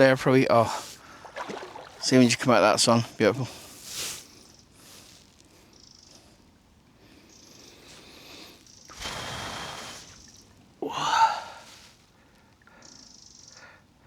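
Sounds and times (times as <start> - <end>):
man breathy exhale: 8.1 - 10.2, 10.8 - 11.8
man voiced sigh: 10.8 - 11.7.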